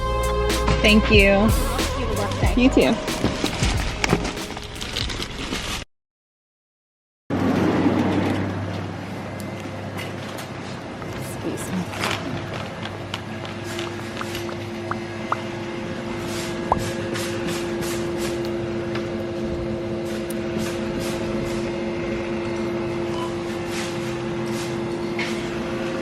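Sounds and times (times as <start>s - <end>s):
vehicle hum with held tones: 0.0s - 5.2s.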